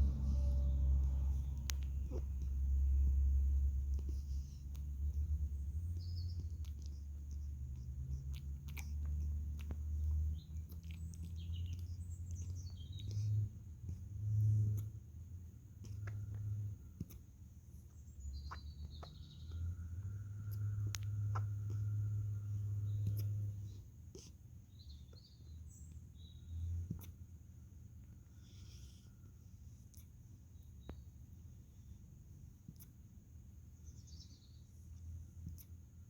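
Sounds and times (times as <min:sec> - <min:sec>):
low rumble: 0:00.0 - 0:11.0.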